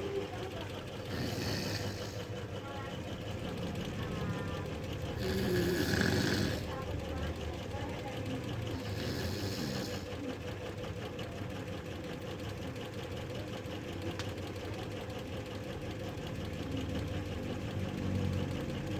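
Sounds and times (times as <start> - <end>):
woman snoring: 1.0 - 2.4, 5.2 - 6.8, 8.7 - 10.2.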